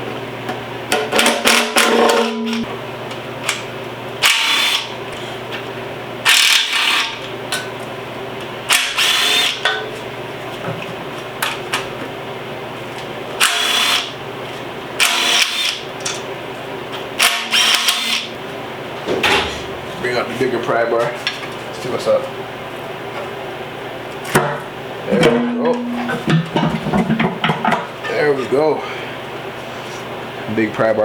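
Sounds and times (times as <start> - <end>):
steady low hum: 18.3 - 31.0.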